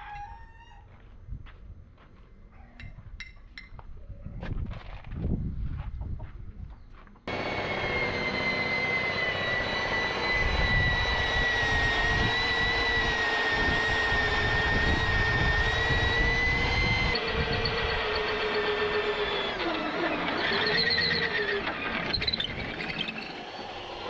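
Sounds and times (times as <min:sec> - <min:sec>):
low machine hum: 0:07.3 - 0:24.0
machine whining and hissing: 0:07.3 - 0:24.0.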